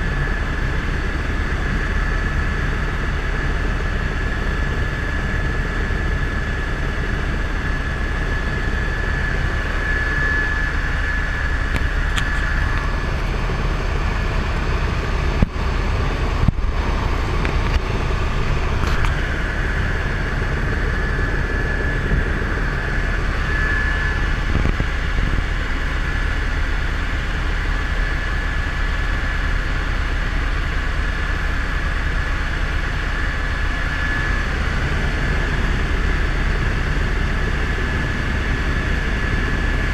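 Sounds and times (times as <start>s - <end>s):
helicopter rotor and engine drone: 0.0s - 39.9s
turbine whine: 0.0s - 39.9s.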